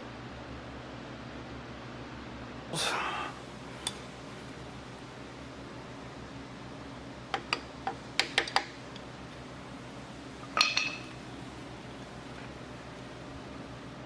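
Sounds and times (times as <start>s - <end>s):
steady low hum: 0.0s - 14.0s
ringing metal clink: 10.6s - 11.1s.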